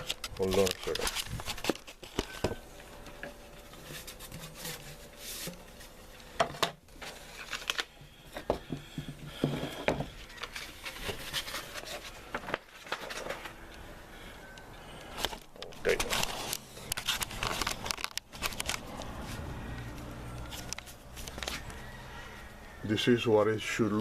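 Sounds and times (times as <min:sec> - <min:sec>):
rubbing and rustling: 0:03.3 - 0:06.2, 0:09.4 - 0:13.6.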